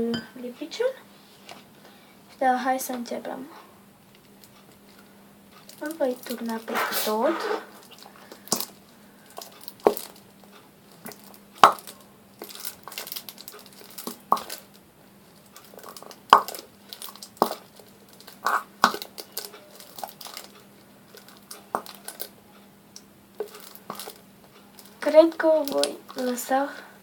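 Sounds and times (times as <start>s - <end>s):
plastic bottle crinkling and clicking: 5.6s - 7.1s, 7.8s - 14.8s, 15.4s - 22.3s, 23.4s - 26.4s.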